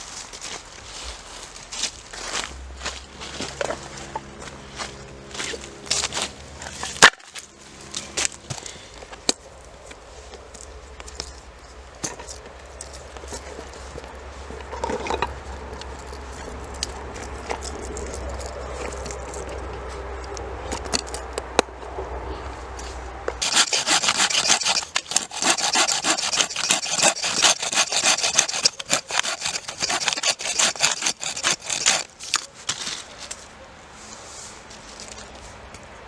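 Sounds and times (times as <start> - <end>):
hand saw cutting wood: 23.4 - 32.5.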